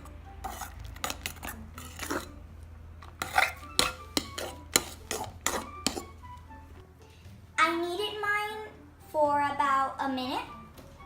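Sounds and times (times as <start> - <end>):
utensil stirring slime in bowl: 0.0 - 2.4, 3.1 - 6.2.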